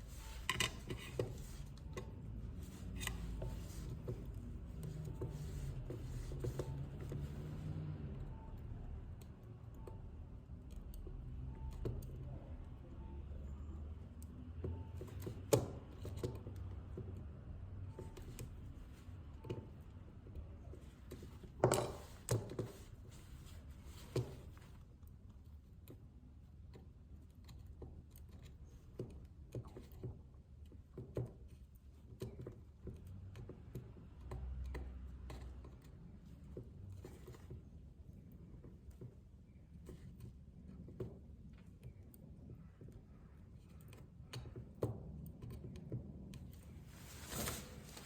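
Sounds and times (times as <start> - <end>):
low steady hum: 0.0 - 15.0
small tools clicking and tapping: 0.2 - 5.3, 21.1 - 22.8, 25.8 - 46.6.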